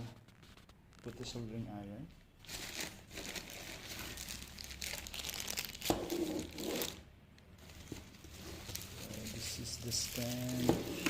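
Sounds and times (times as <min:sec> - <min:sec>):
plastic packaging crinkling: 0:02.4 - 0:07.0, 0:07.6 - 0:11.0.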